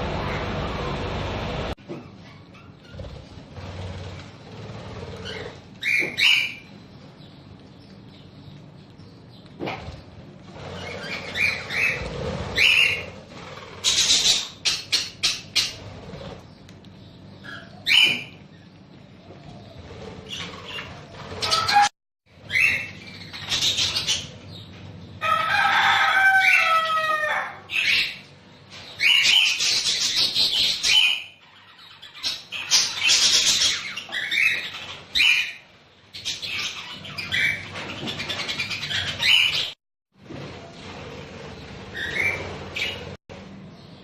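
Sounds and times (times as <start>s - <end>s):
budgerigars chirping: 5.1s - 6.7s, 10.6s - 16.3s, 29.0s - 39.8s, 41.9s - 43.1s
wings flapping: 9.6s - 16.5s.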